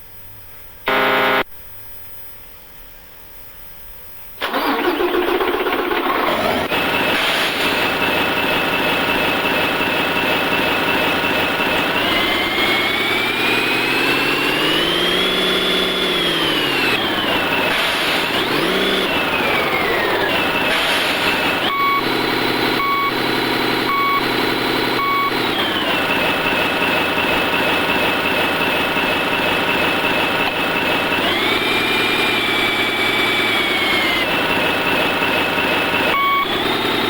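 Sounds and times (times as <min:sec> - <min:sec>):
high engine whine: 0:00.0 - 0:02.2, 0:04.2 - 0:37.0
short beep: 0:00.9 - 0:01.4
diesel truck engine idling and revving: 0:04.4 - 0:37.0.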